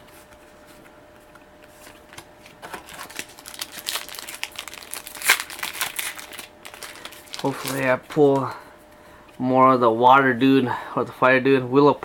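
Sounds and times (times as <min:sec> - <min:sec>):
foil wrapper crinkling and tearing: 0:02.1 - 0:08.0.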